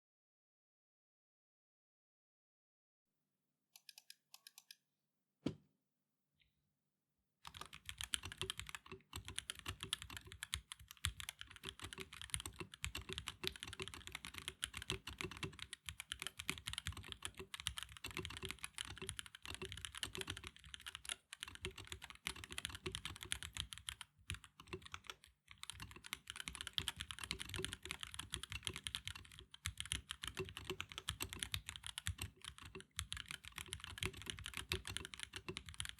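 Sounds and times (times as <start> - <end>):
mechanical keyboard typing: 7.5 - 35.9.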